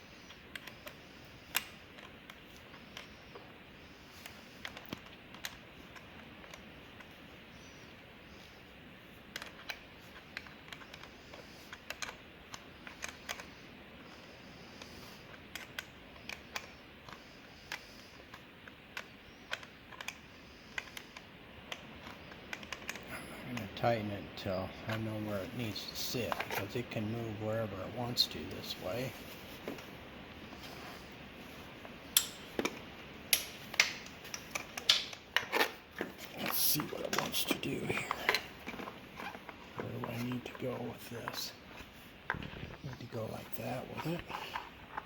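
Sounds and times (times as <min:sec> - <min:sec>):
small parts clicking and tapping: 0:00.2 - 0:23.7, 0:31.8 - 0:41.4.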